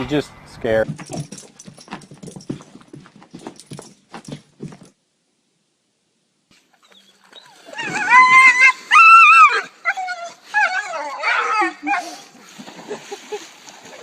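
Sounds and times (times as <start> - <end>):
dog whining: 6.8 - 12.2.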